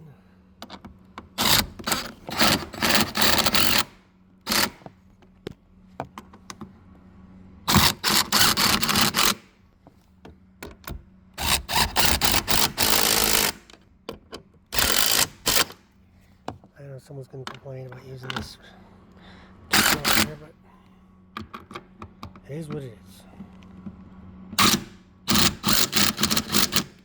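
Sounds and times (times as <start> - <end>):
power driver whirring: 0.7 - 4.9, 7.7 - 9.5, 10.7 - 13.9, 14.7 - 15.9, 19.7 - 20.5, 21.4 - 27.0
handling clicks and knocks: 17.4 - 18.6, 21.4 - 22.9.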